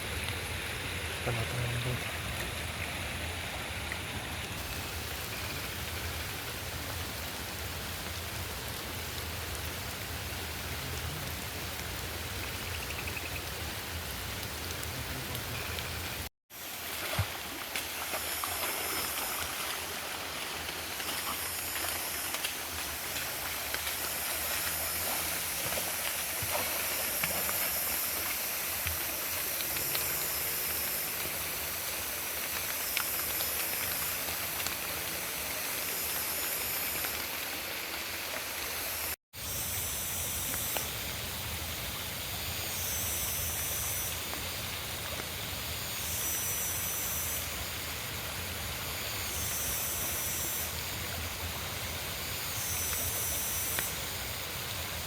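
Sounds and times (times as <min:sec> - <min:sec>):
rain falling: 0:00.0 - 0:39.2
river running: 0:00.0 - 0:55.0.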